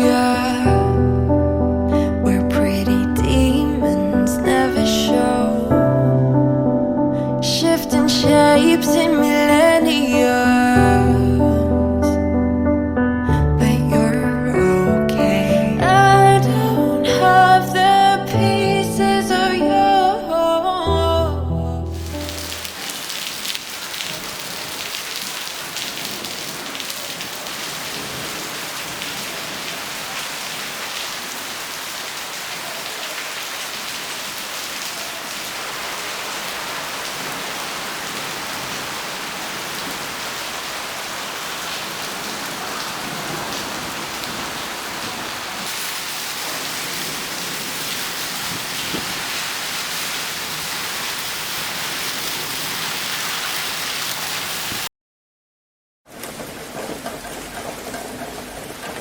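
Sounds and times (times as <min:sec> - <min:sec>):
steady rain patter: 0:21.9 - 0:54.9, 0:56.1 - 0:59.0.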